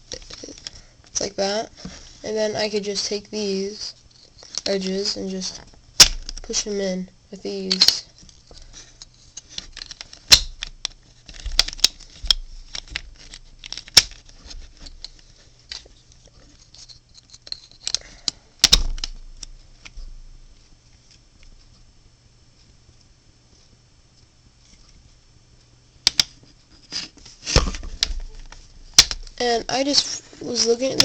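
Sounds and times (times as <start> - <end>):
plastic cube pieces clicking: 7.7 - 8.7, 9.4 - 15.9, 26.0 - 26.4.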